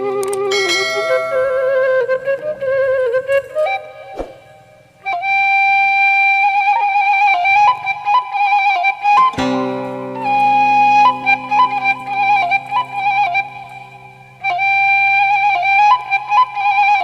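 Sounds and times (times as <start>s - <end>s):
flute playing slow melody: 0.0s - 17.0s
plucked strings: 0.2s - 4.0s, 9.2s - 16.8s
low sustained notes: 9.2s - 17.0s.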